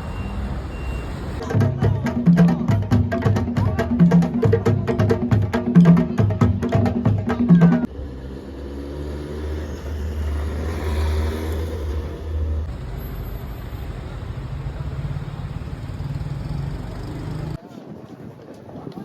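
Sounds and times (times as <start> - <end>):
city traffic rumble: 0.0 - 2.0, 7.7 - 17.6.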